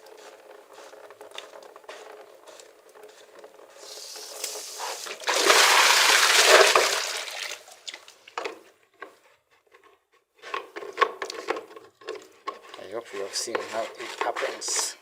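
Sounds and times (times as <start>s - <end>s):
water gushing from drain: 3.8s - 8.0s.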